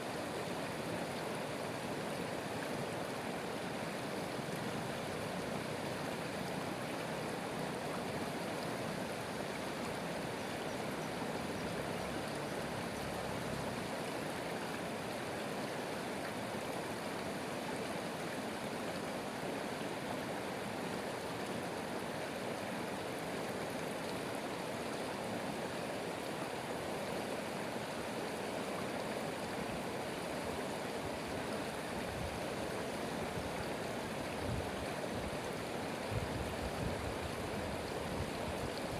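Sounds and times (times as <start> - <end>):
stream flowing: 0.0 - 38.9.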